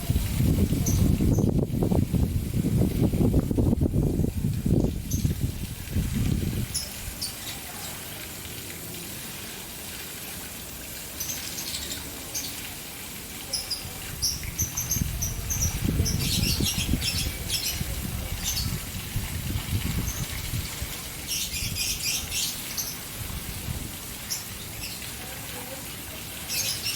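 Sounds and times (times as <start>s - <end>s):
fountain water splashing: 0.0s - 26.9s
caged birds chirping: 0.5s - 1.9s, 4.7s - 5.5s, 6.2s - 8.0s, 11.1s - 12.7s, 13.5s - 23.1s, 24.2s - 25.7s, 26.4s - 26.9s.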